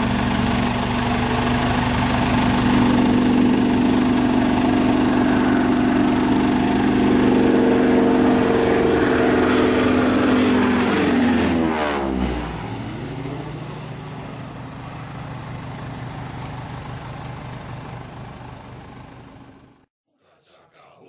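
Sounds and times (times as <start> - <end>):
propeller plane passing low: 0.0 - 19.9.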